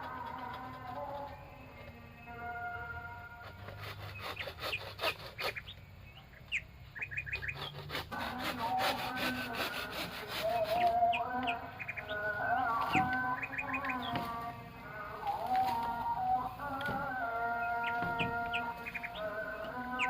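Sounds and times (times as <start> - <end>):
forest birds chirping and calling: 0.0 - 20.0
rapid rhythmic rasping strokes: 3.3 - 5.7, 7.2 - 20.0.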